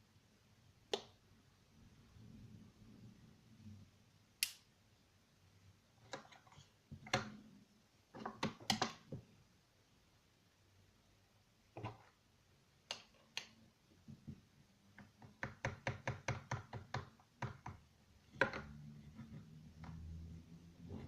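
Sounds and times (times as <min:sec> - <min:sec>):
hard object tapping: 0:15.0 - 0:20.1.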